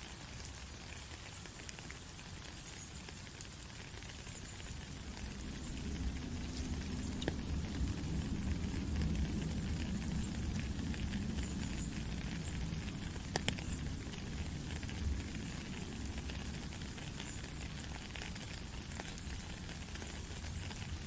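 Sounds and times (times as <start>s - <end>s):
steady rain falling: 0.0s - 21.0s
sharp drip clicks: 2.6s - 15.2s.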